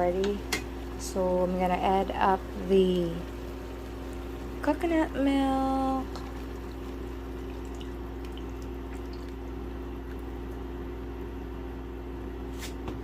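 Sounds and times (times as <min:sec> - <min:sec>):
steady low hum: 0:00.0 - 0:13.0
liquid pouring into a pot: 0:05.7 - 0:10.7.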